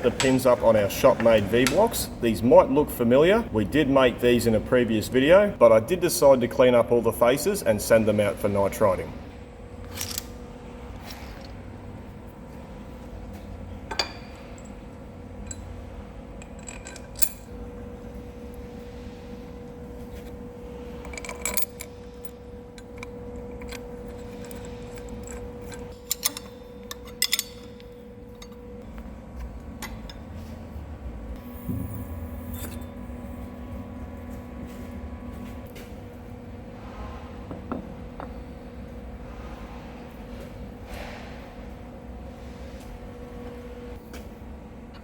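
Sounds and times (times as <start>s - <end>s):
shop hum: 0.0s - 45.0s
held tone: 31.4s - 33.9s.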